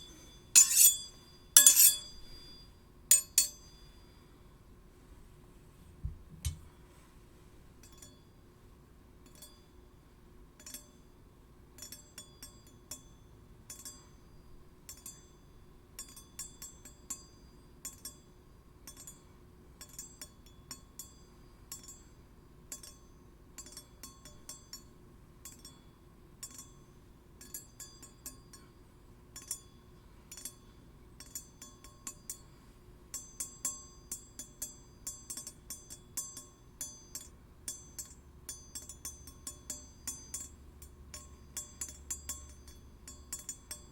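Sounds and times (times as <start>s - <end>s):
metallic clinks of steel blades: 0.0s - 4.0s, 33.1s - 43.9s
faint steady hum: 0.0s - 43.9s.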